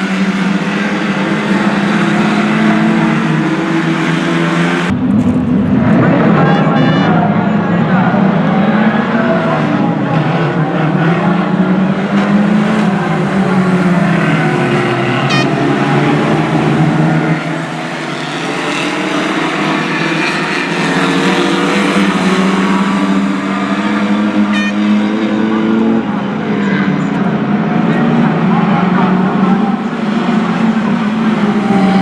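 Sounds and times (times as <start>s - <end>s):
race car engines at speed: 0.0s - 32.0s.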